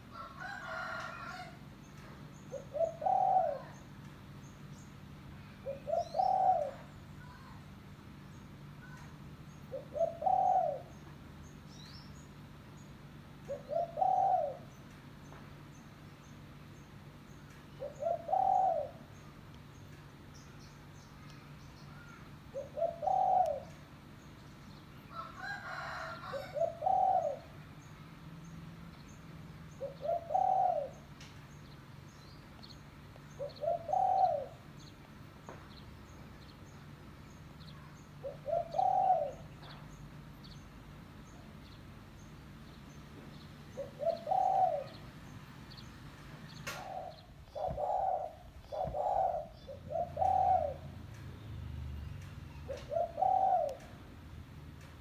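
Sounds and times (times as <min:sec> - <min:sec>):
dove cooing: 0:02.4 - 0:03.9, 0:05.4 - 0:07.4, 0:09.7 - 0:11.0, 0:13.4 - 0:14.9, 0:17.8 - 0:19.2, 0:21.9 - 0:24.0, 0:25.1 - 0:27.6, 0:29.7 - 0:31.2, 0:33.3 - 0:34.9, 0:37.6 - 0:40.0, 0:43.6 - 0:45.3, 0:46.5 - 0:51.2, 0:52.6 - 0:54.2.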